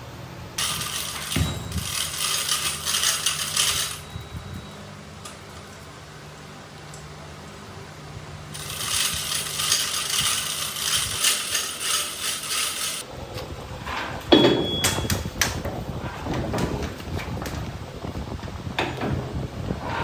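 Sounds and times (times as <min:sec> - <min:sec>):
metallic clinks and knocks: 0:00.6 - 0:06.0, 0:08.6 - 0:13.0
sharp ringing metal clang: 0:14.4 - 0:15.1.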